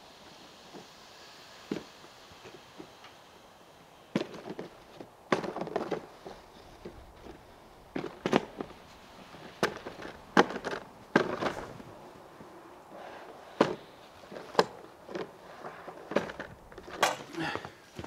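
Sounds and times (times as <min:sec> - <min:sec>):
sharp knocks and crunches: 0:04.2 - 0:11.9.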